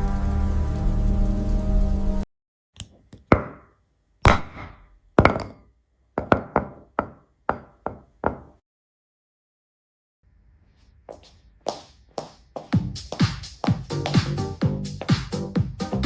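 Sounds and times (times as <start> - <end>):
knocks on a hard object: 3.3 - 3.7, 4.3 - 5.6, 6.2 - 8.6.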